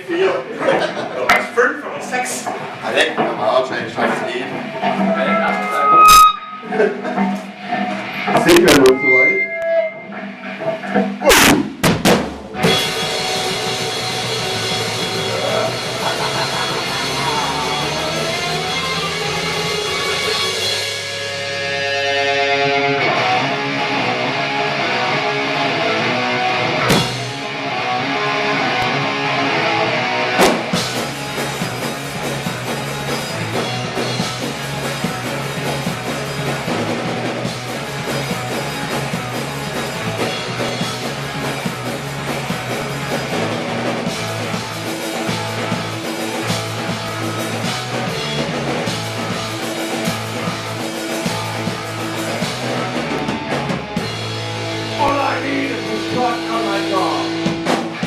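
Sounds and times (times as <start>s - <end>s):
loud rock music: 0.0s - 58.0s.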